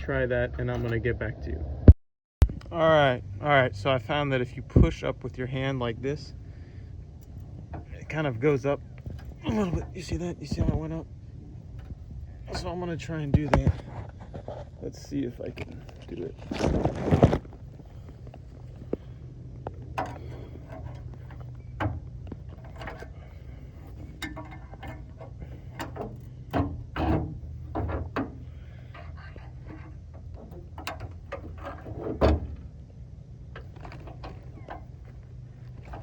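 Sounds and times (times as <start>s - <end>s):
low steady hum: 0.0s - 36.0s
metal clicks knocks and scrapes: 17.1s - 32.8s, 33.5s - 36.0s.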